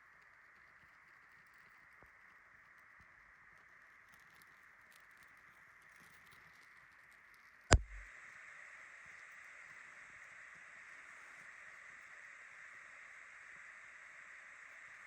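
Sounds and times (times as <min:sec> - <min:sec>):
faint hiss: 0:03.7 - 0:15.0
sharp loud knock: 0:07.7 - 0:08.0
low thud: 0:07.7 - 0:08.1.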